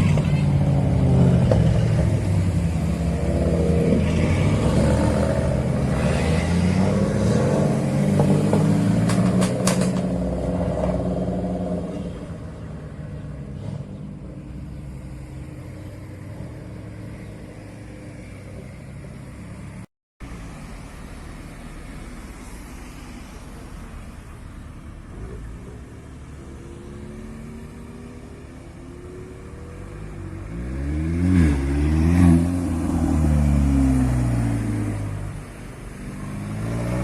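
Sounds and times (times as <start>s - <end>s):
exhaust cracks: 8.5s - 10.2s.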